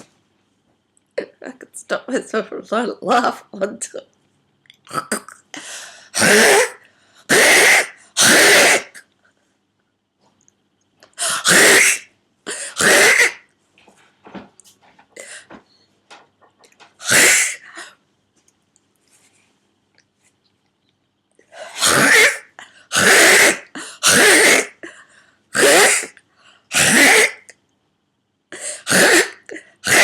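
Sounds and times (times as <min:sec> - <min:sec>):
woman's throat-clearing spasms: 0:04.7 - 0:09.1, 0:11.0 - 0:13.5, 0:17.0 - 0:18.0, 0:21.5 - 0:24.9, 0:25.5 - 0:27.6, 0:28.6 - 0:30.0.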